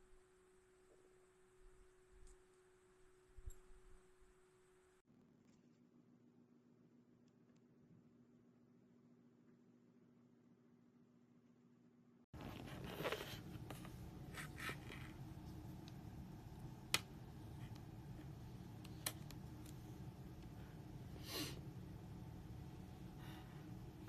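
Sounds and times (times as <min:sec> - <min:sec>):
small objects rubbing and scraping: 0:12.4 - 0:15.8.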